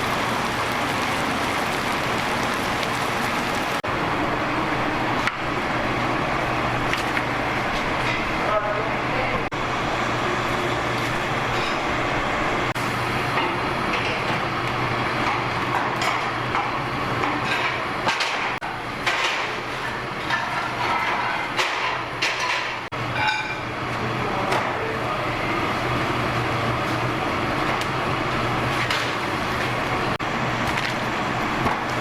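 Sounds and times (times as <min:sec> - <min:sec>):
machine hum: 0:00.0 - 0:15.1.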